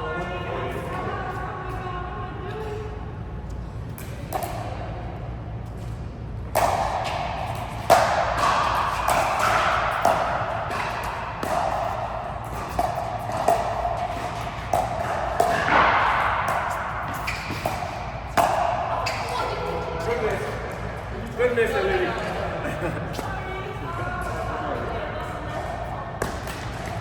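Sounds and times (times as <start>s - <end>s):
racket striking ball echoing: 4.0s - 4.8s, 6.4s - 21.1s, 25.6s - 27.0s.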